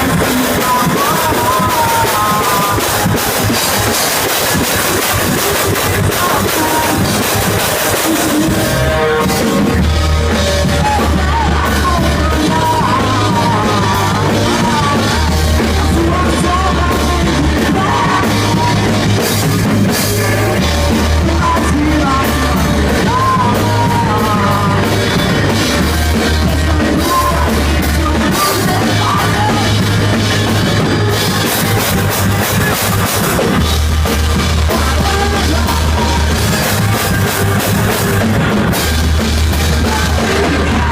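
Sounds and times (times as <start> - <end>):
bass line: 0.0 - 40.9
person singing: 0.0 - 40.9
rock band playing: 0.0 - 40.9.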